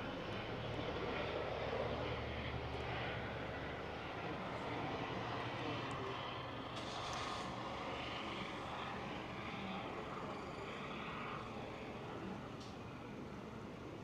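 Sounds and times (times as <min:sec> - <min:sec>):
engine droning: 0:00.0 - 0:14.0.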